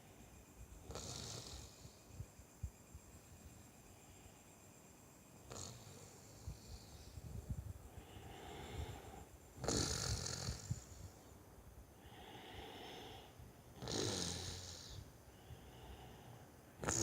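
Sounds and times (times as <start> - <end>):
man snoring: 0.9 - 1.9, 5.5 - 7.0, 8.0 - 11.0, 12.0 - 15.0, 15.6 - 17.0
soft breath: 6.1 - 9.5, 10.5 - 13.6, 14.6 - 16.7.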